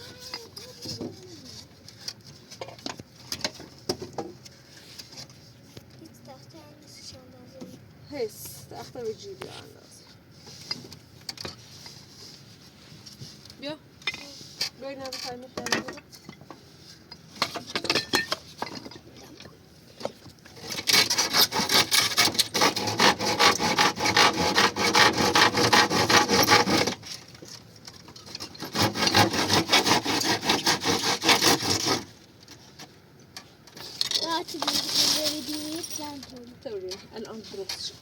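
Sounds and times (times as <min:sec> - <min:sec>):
hand saw sawing wood: 0:20.6 - 0:27.2, 0:28.3 - 0:32.2.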